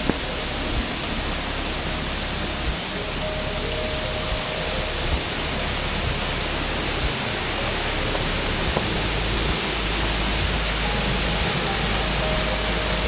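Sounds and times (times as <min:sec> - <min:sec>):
faint low bumps: 0:00.0 - 0:13.0
waterfall roaring: 0:00.0 - 0:13.0.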